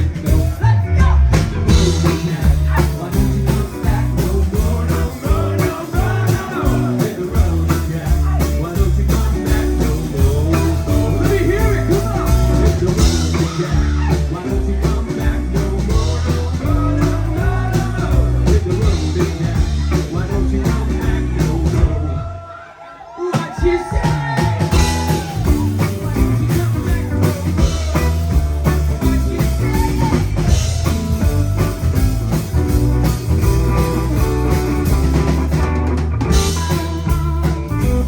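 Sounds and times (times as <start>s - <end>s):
drums keeping a steady beat: 0.0s - 22.4s, 23.3s - 38.0s
bass line: 0.0s - 22.5s, 23.7s - 38.0s
guitar: 0.0s - 22.8s, 23.4s - 38.0s
person singing: 0.0s - 35.5s, 36.3s - 38.0s.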